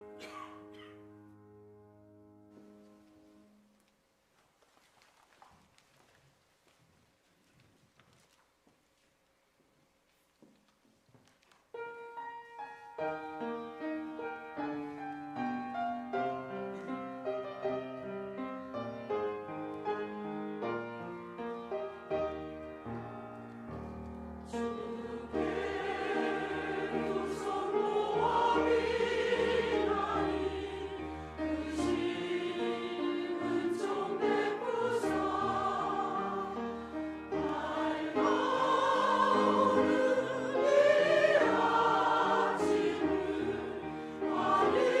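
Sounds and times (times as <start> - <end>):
piano accompaniment: 11.7 - 45.0
choir singing a hymn: 24.4 - 45.0.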